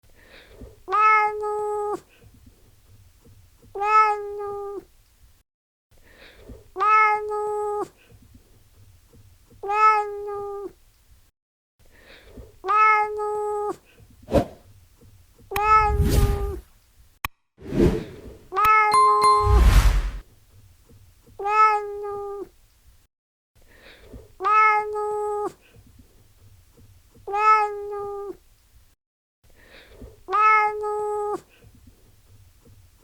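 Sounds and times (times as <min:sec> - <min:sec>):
cat meowing: 0:00.9 - 0:02.0, 0:03.8 - 0:04.8, 0:06.8 - 0:07.8, 0:09.6 - 0:10.7, 0:12.6 - 0:13.7, 0:15.5 - 0:16.6, 0:21.4 - 0:22.4, 0:24.4 - 0:25.5, 0:27.3 - 0:28.3, 0:30.3 - 0:31.4.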